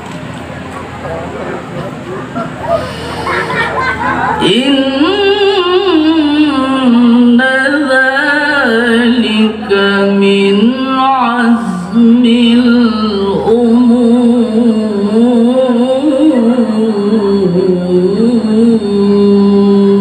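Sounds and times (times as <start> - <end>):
man chanting melodically: 4.2 - 20.0.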